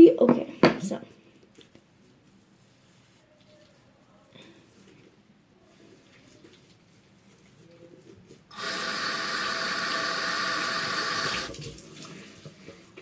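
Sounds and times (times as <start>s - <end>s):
faint handling sounds: 1.0s - 8.5s.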